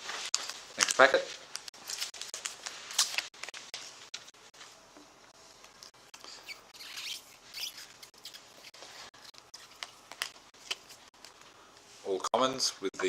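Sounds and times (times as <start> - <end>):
card wrapper rustling and tearing: 0.1 - 4.4, 5.6 - 11.4.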